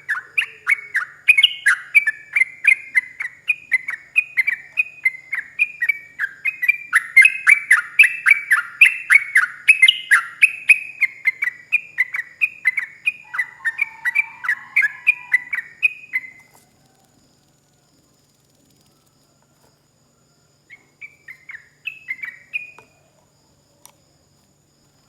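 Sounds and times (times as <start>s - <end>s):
bird singing whistled notes: 0.0s - 16.5s, 20.7s - 23.0s
lower-pitched bird voice: 0.0s - 16.5s.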